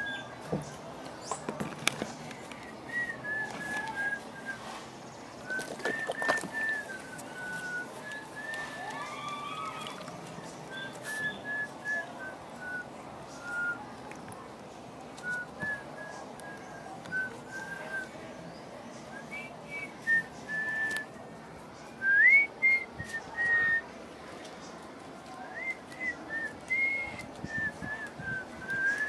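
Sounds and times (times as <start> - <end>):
person whistling a tune: 10.7 - 12.8, 22.0 - 23.8, 25.6 - 29.0.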